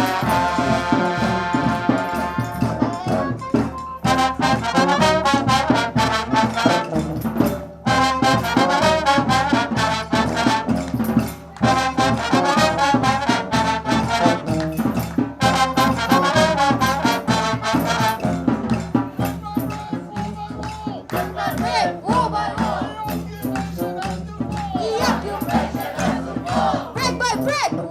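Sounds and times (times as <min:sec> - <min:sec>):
brass music with trumpets: 0:00.0 - 0:27.9.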